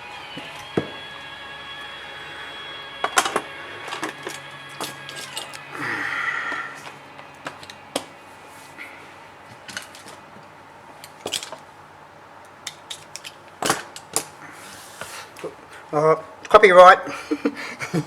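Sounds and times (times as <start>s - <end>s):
brief electronic tone: 0.0s - 9.0s.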